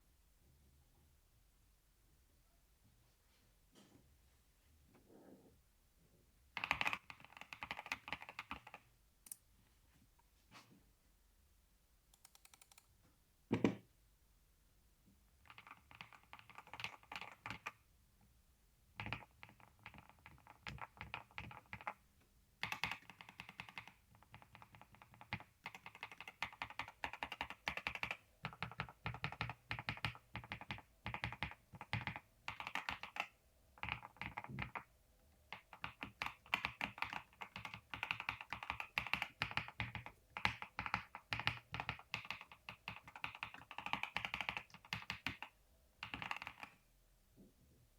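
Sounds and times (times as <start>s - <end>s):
mechanical keyboard typing: 6.6s - 9.4s, 12.1s - 12.9s, 15.4s - 17.8s, 19.0s - 22.0s, 22.6s - 46.8s.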